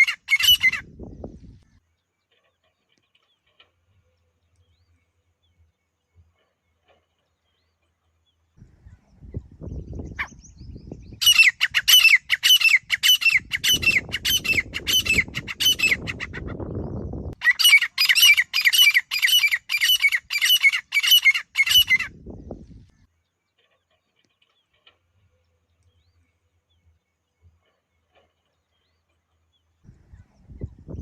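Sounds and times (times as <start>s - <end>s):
francolin harsh repeated calls: 0.0s - 0.8s, 11.2s - 16.4s, 17.4s - 22.1s.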